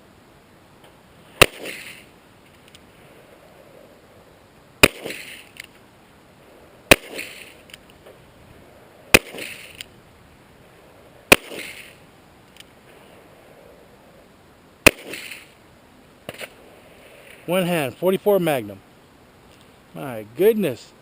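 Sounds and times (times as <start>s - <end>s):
handgun shots with echo: 1.4s - 2.0s, 4.8s - 5.5s, 6.9s - 7.6s, 9.1s - 9.8s, 11.3s - 11.9s, 14.8s - 15.5s.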